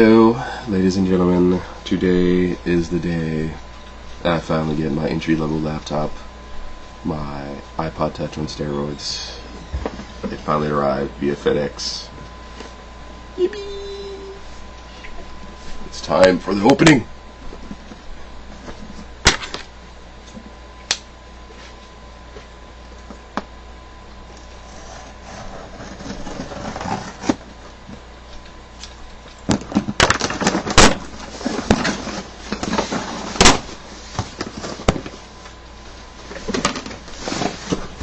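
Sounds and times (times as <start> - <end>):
scrapes: 24.6 - 27.4.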